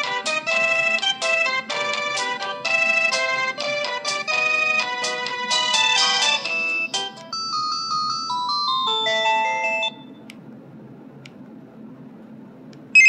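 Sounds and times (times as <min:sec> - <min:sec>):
electronic ringtone melody: 0:00.0 - 0:10.1.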